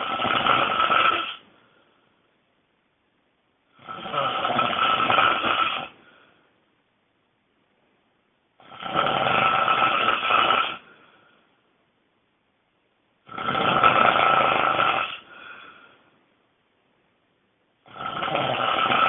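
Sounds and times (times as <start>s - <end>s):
person snoring loudly: 0.0s - 1.4s, 3.7s - 6.0s, 8.6s - 10.9s, 13.2s - 15.7s, 17.8s - 19.0s.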